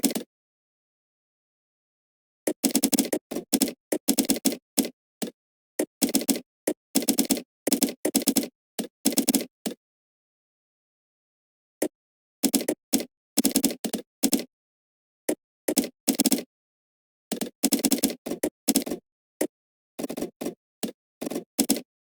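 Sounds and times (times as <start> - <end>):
typing on computer keyboard: 0.0 - 0.3, 2.5 - 9.8, 11.8 - 14.5, 15.3 - 16.5, 17.3 - 19.0, 20.0 - 21.9.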